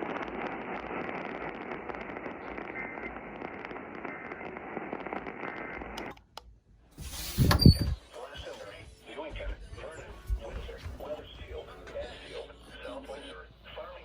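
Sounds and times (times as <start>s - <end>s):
radio static hiss and crackling: 0.0s - 6.1s.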